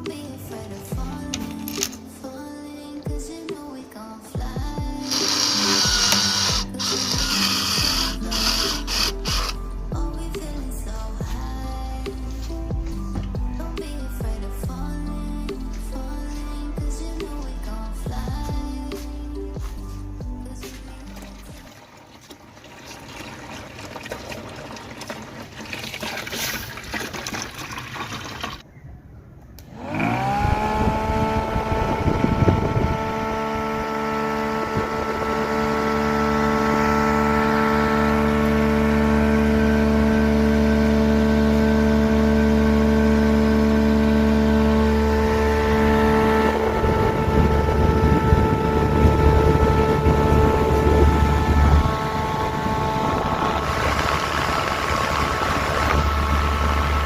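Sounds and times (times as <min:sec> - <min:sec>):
small fan motor humming: 0:04.4 - 0:21.4, 0:29.6 - 0:57.0
water trickling: 0:20.9 - 0:28.6.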